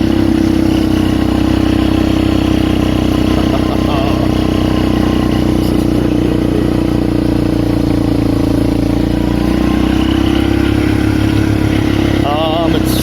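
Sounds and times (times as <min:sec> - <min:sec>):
atv engine running: 0:00.0 - 0:13.0.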